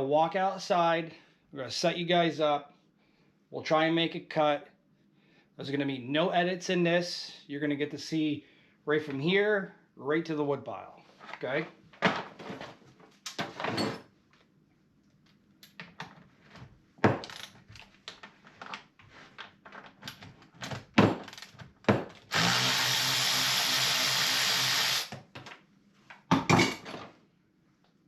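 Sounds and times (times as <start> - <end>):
chainsaw running without load: 22.3 - 25.1.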